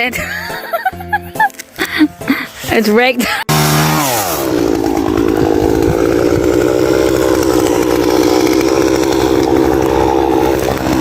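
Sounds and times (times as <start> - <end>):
chainsaw engine droning: 3.4 - 11.0.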